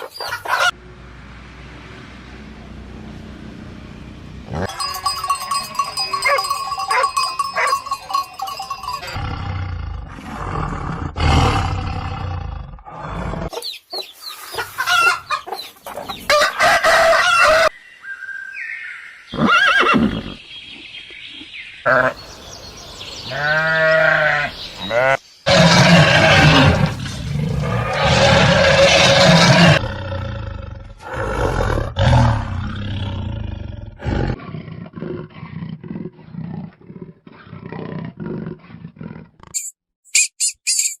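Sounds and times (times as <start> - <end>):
farm animal calls: 0.0 - 0.8, 4.5 - 9.2, 13.5 - 17.7, 21.8 - 22.4, 23.2 - 29.8
rooster crowing: 16.3 - 17.8.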